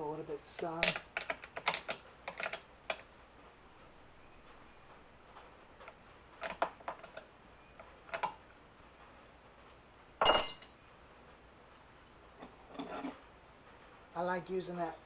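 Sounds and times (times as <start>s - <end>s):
screwdriver clicking on metal parts: 0.8s - 3.1s.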